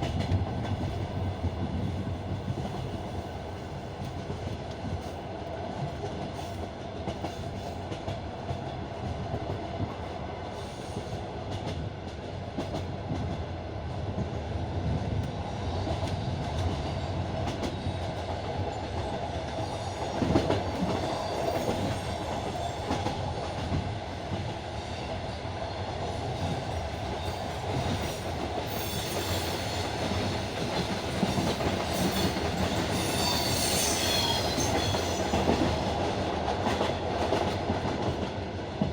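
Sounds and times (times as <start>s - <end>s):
train rumbling: 0.0s - 38.9s
wheel squeal: 31.9s - 35.5s.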